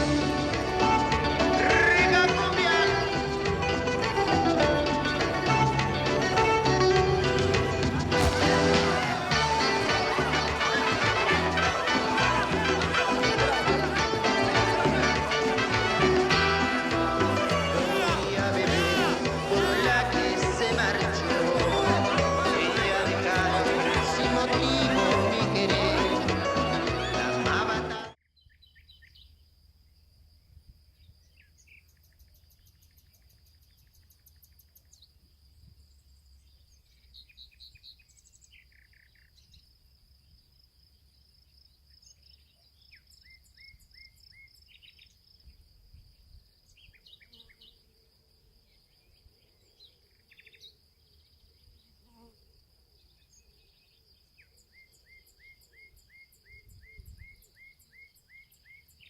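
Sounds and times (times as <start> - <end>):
birds chirping and trilling: 28.2 - 29.5, 31.0 - 35.2, 35.8 - 47.8, 48.6 - 52.0.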